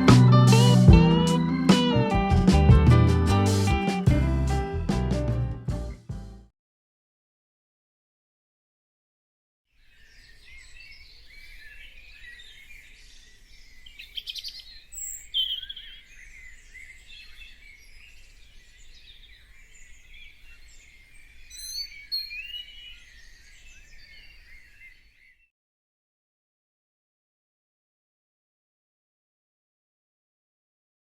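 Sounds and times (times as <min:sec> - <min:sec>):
songbirds chirping and singing: 0:00.0 - 0:02.3, 0:09.8 - 0:25.5.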